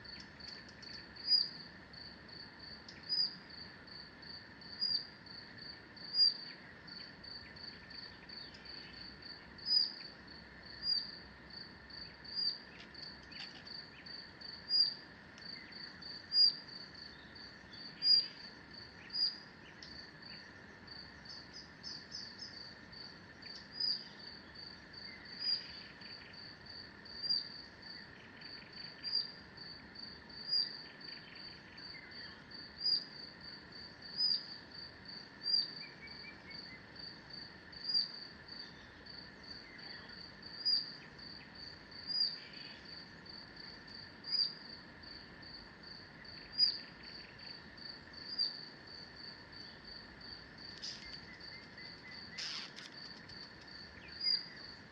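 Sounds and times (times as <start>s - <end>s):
high thin insect chirp: 0.0s - 54.9s
faint bird calls: 50.8s - 54.6s.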